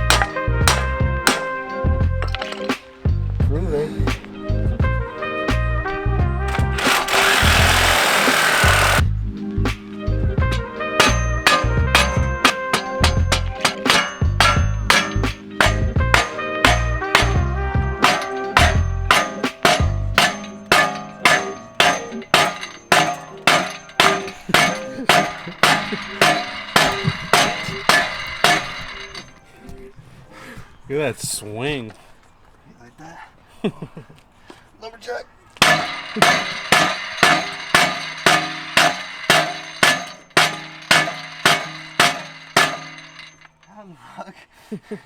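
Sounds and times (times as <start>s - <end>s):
hammer on metal: 0.0s - 1.6s, 6.5s - 9.0s, 10.4s - 29.3s, 35.6s - 43.6s.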